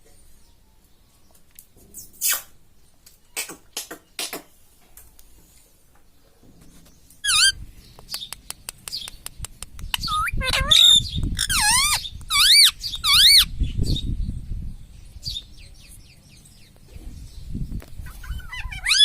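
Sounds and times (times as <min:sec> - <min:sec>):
parakeet squeaky chirps: 0:07.2 - 0:07.6, 0:09.8 - 0:13.5, 0:18.0 - 0:19.0
parakeet warbling call: 0:07.2 - 0:07.6, 0:09.9 - 0:13.5, 0:18.2 - 0:19.0
parakeet ticking clicks: 0:08.0 - 0:10.2.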